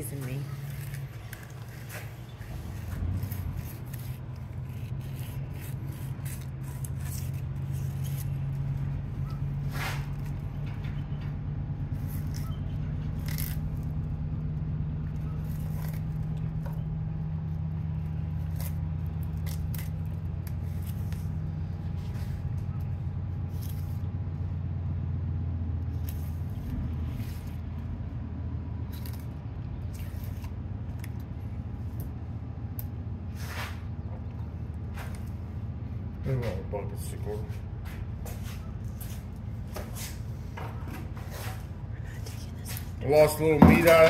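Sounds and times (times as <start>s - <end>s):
knife scraping and cutting fish: 0.0s - 10.5s, 11.9s - 13.9s, 28.9s - 31.3s
low motor hum: 0.0s - 44.0s.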